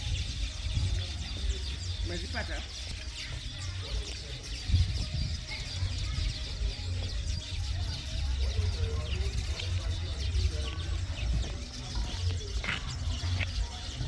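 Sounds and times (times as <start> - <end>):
birds chattering: 0.0 - 14.0
low uneven rumble: 3.2 - 14.0.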